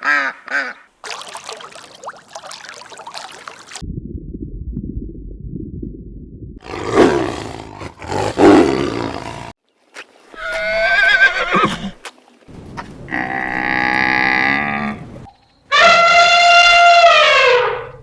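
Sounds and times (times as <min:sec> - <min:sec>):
rough roar-like animal calls: 0:06.6 - 0:09.5
long steady animal call: 0:15.7 - 0:18.0.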